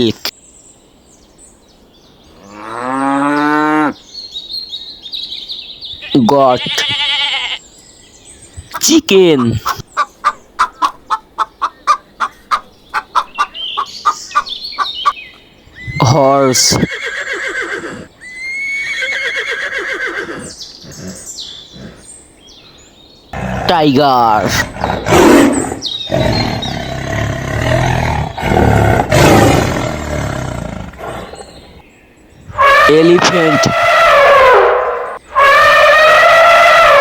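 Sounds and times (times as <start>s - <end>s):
high thin bird calls: 8.3s - 22.1s, 32.4s - 37.0s
chicken clucking: 9.4s - 15.2s
tiger roaring: 23.4s - 31.8s, 32.5s - 37.0s.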